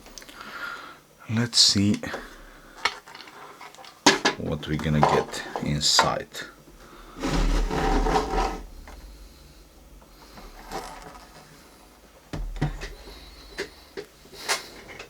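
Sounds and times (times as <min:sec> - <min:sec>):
plastic casing rattling scrape: 0:06.9 - 0:11.7.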